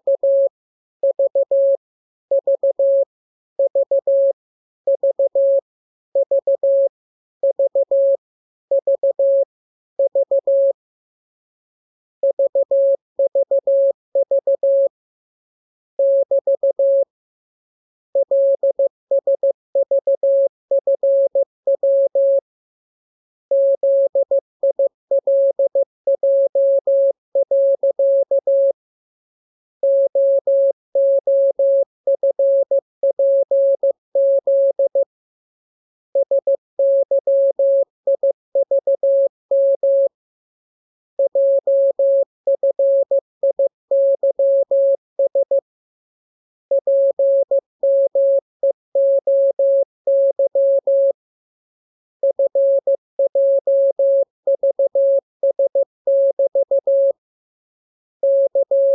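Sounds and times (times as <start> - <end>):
morse code beeps: 0.1 - 1.8, 2.4 - 3.0, 3.7 - 4.3, 5.0 - 5.6, 6.2 - 6.9, 7.5 - 8.2, 8.8 - 9.4, 10.0 - 10.8, 12.2 - 14.9, 16.0 - 17.1, 18.2 - 22.4, 23.5 - 28.7, 29.8 - 35.1, 36.2 - 40.2, 41.2 - 45.6, 46.7 - 51.1, 52.2 - 57.2, 58.2 - 58.9.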